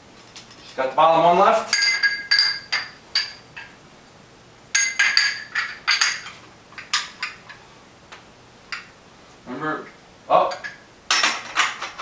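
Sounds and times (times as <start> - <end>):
metal clamp and bar clinking: 0.2 - 7.4.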